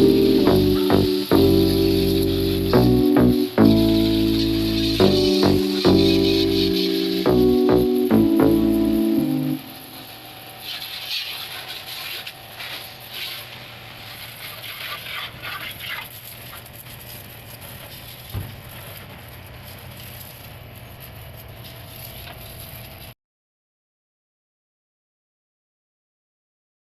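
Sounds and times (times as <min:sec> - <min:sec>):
electric pump humming: 0:00.0 - 0:10.4
water spray hissing: 0:00.0 - 0:23.1.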